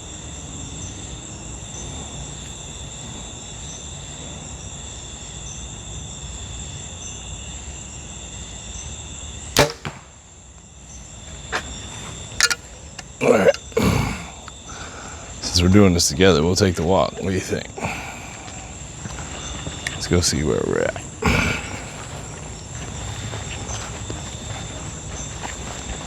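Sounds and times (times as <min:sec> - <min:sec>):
insects trilling: 0:00.0 - 0:26.0
bow string snap: 0:09.6 - 0:10.1.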